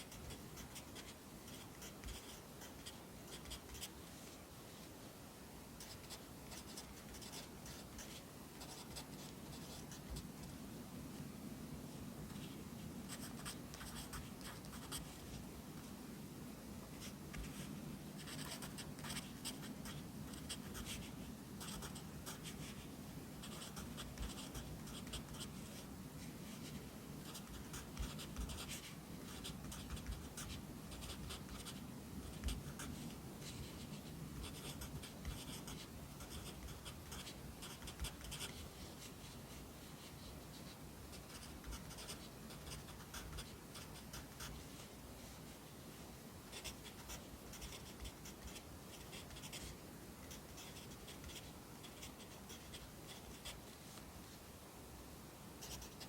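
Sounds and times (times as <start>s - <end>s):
pencil scratching on paper: 0.0s - 3.9s, 5.8s - 10.3s, 13.1s - 15.3s, 17.0s - 39.4s, 40.0s - 44.8s, 46.5s - 49.7s, 50.3s - 53.6s.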